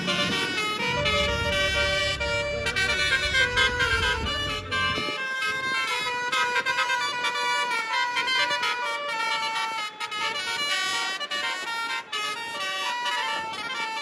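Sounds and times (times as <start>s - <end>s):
low engine rumble: 0.0s - 6.4s
multi-tone bus horn melody: 0.0s - 14.0s.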